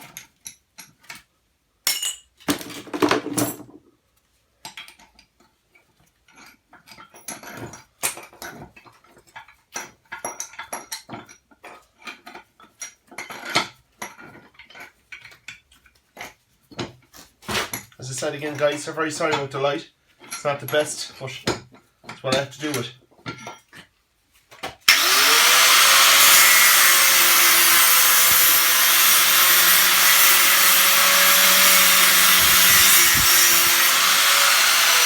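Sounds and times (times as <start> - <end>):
scrap metal clinking and clattering: 1.9 - 3.8, 23.1 - 24.5.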